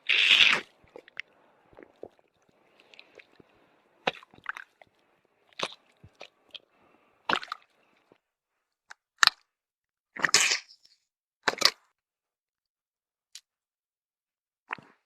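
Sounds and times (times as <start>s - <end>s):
feet squelching in mud: 7.3s - 7.7s.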